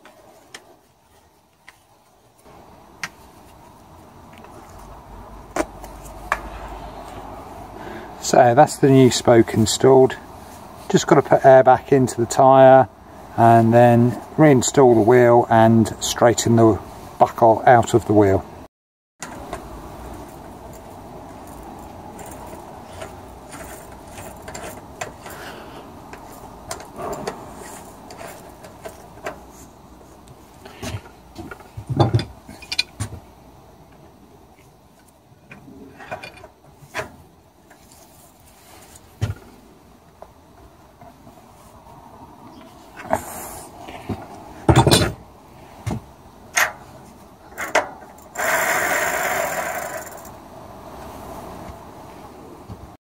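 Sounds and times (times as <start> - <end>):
bicycle wheel clicks and rattles: 20.7 - 25.4, 47.5 - 50.4.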